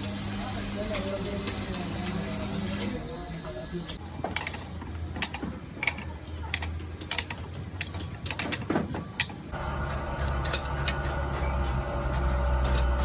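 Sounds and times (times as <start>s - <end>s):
workshop machine humming: 0.0s - 13.0s
metal tools clicking and clinking: 3.9s - 9.5s.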